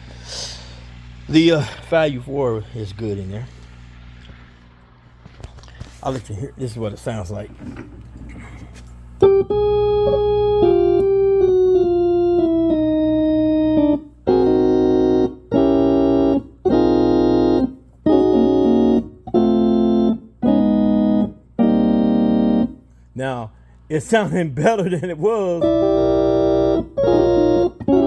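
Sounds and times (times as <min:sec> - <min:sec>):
steady low hum: 0:00.0 - 0:28.0
organ playing notes and chords: 0:05.6 - 0:28.0.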